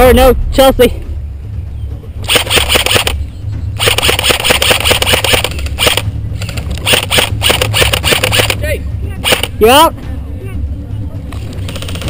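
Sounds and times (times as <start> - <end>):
airsoft gun firing full auto: 2.3 - 3.2, 3.8 - 6.0, 6.8 - 8.6, 9.2 - 9.5.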